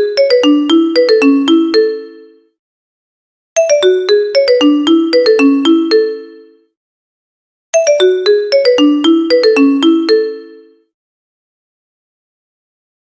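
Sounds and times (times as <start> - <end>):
phone ringtone melody: 0.0 - 2.5, 3.6 - 6.7, 7.8 - 10.9.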